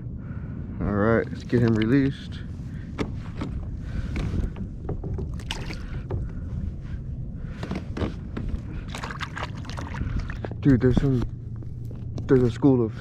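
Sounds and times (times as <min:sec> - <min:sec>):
low rumble: 0:00.0 - 0:13.0
small knocks: 0:04.2 - 0:06.5
water splashes: 0:05.2 - 0:06.1, 0:08.8 - 0:10.6.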